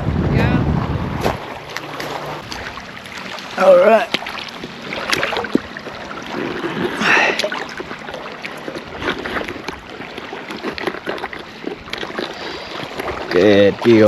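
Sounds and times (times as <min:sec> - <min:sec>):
wind on microphone: 0:00.0 - 0:02.8
water noise: 0:00.0 - 0:14.0.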